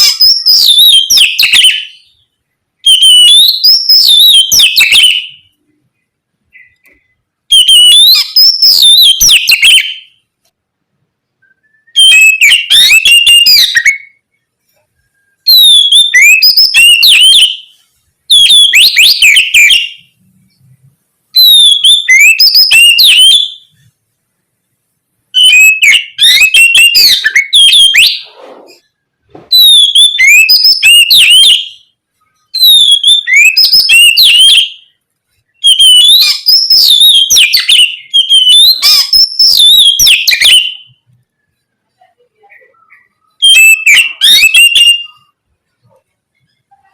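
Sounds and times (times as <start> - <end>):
bird singing whistled phrases: 0.0 - 2.2, 2.8 - 5.6, 6.5 - 10.2, 11.4 - 14.2, 15.0 - 20.2, 21.4 - 23.7, 25.4 - 28.8, 29.5 - 34.9, 35.6 - 41.0, 42.6 - 45.4.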